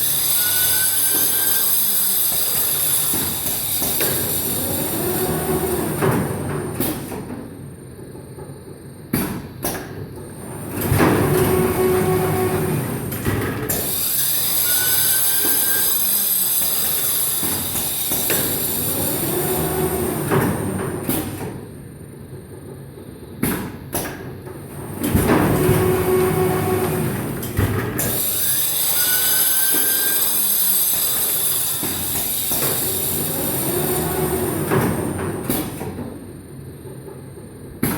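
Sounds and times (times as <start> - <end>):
loud mechanical run with hum: 0.0 - 6.9, 10.4 - 21.2, 24.7 - 35.8.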